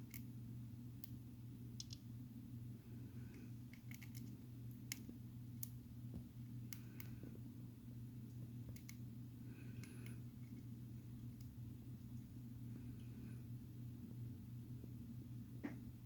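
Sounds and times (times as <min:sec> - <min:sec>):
hamster cracking seed shells: 0:00.0 - 0:00.3, 0:01.8 - 0:02.1, 0:03.3 - 0:05.8, 0:08.7 - 0:09.0.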